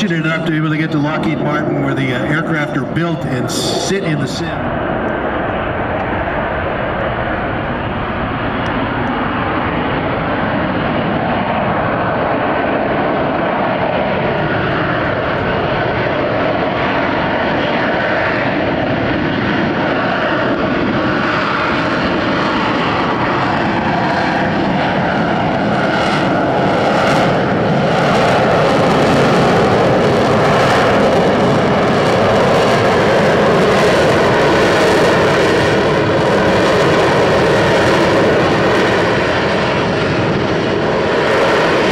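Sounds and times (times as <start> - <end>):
jet engine roaring overhead: 0.0 - 41.9.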